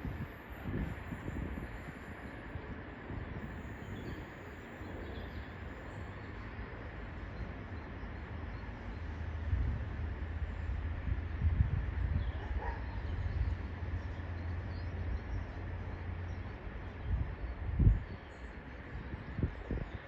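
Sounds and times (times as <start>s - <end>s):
freight train rolling on rails: 0.0s - 20.0s.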